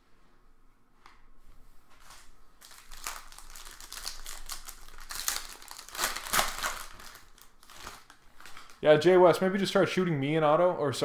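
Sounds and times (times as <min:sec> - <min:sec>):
plastic packaging crinkling: 0:02.0 - 0:09.2.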